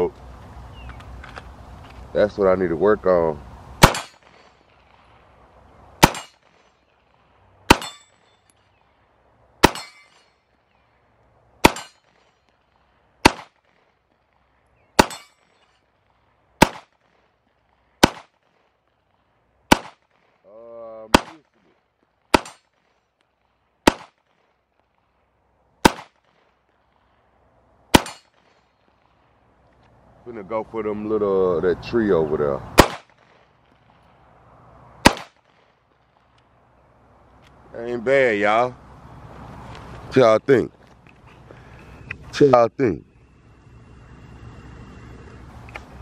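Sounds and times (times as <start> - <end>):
steel targets ringing: 3.8 - 4.7, 6.0 - 6.5, 7.7 - 8.6, 9.6 - 10.5, 11.6 - 12.3, 15.0 - 15.8, 28.0 - 28.4
pistol shots: 3.8 - 5.0, 6.0 - 6.8, 7.7 - 8.3, 9.6 - 10.3, 11.6 - 12.3, 13.2 - 14.0, 15.0 - 15.6, 16.6 - 17.2, 18.0 - 18.6, 19.7 - 20.4, 21.1 - 21.7, 22.3 - 22.9, 23.8 - 24.5, 25.8 - 26.6, 27.9 - 28.6, 32.8 - 33.7, 35.0 - 36.3.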